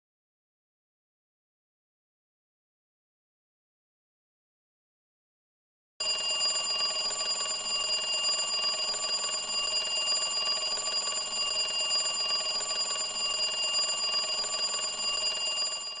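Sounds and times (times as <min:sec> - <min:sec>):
alarm clock ringing: 0:06.0 - 0:16.0.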